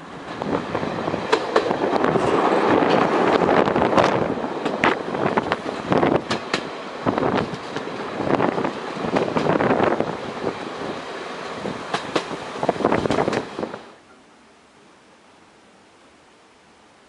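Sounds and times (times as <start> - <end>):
train running by: 0.0 - 14.0
faint hiss: 3.7 - 17.0.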